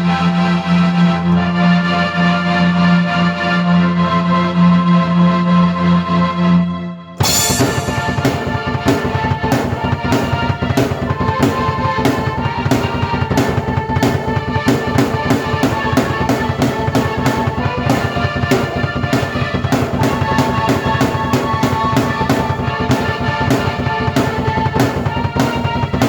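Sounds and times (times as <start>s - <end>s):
drum beat: 7.2s - 26.0s
held keyboard melody notes: 7.2s - 26.0s.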